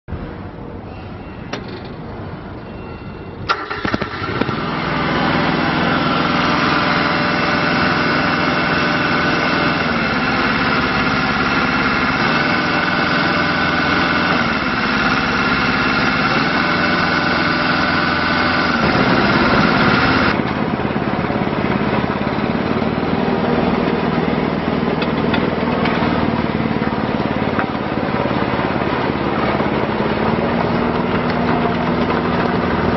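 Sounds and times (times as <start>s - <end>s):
excavator diesel engine running: 1.6s - 32.9s
high whine: 17.8s - 25.6s.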